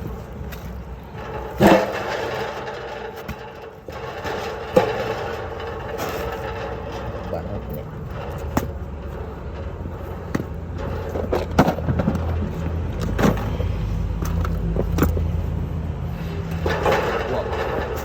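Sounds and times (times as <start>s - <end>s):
sharp clicks and knocks: 0.0s - 15.5s.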